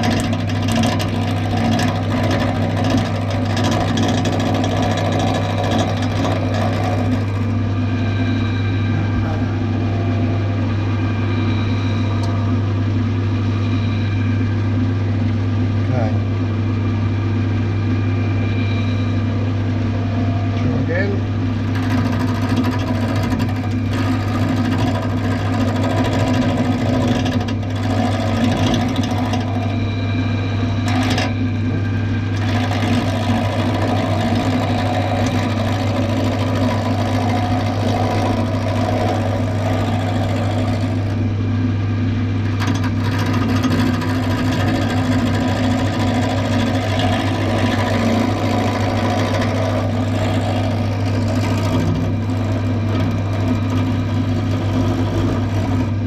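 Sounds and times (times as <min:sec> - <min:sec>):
tool cutting wood: 0:00.0 - 0:07.5, 0:21.6 - 0:29.6, 0:30.9 - 0:31.4, 0:32.3 - 0:41.2, 0:42.5 - 0:56.0
lathe motor humming: 0:00.0 - 0:56.0.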